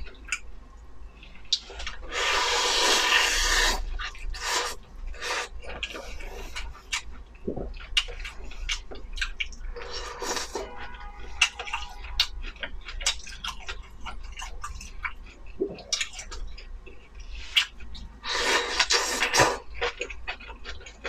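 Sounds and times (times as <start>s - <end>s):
wet chewing: 1.2s - 21.0s
slurping noodles: 2.0s - 6.6s.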